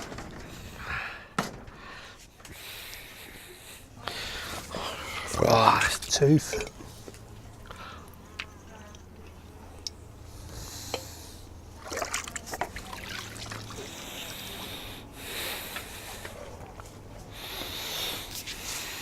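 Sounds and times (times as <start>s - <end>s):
water splashing and dribbling: 11.7s - 14.8s.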